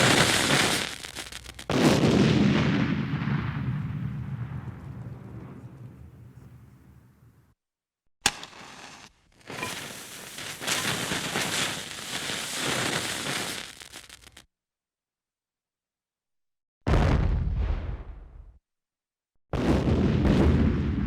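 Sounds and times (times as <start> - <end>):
lit fuse hissing and crackling: 0.0 - 1.7, 8.3 - 14.5
match striking and flaring: 0.0 - 1.7, 8.3 - 14.4
explosion rumble: 1.6 - 7.4, 16.9 - 18.6, 19.6 - 21.0.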